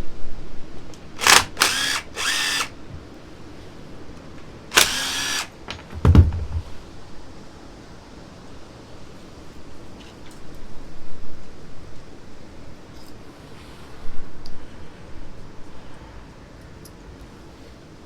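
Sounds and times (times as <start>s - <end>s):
power tool bursts: 1.2s - 2.8s, 4.7s - 5.6s
dull low thump: 5.9s - 6.8s.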